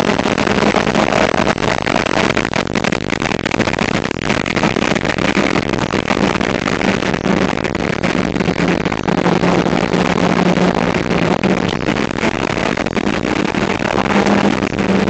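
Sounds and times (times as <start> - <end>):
wind and road noise roar: 0.0 - 15.0
car engine at steady revs: 13.4 - 15.0.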